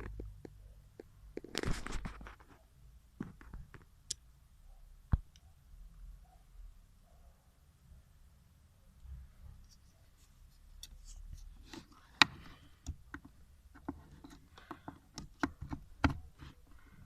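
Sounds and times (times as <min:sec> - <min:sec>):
sharp clicks and light knocks: 0:10.7 - 0:16.9.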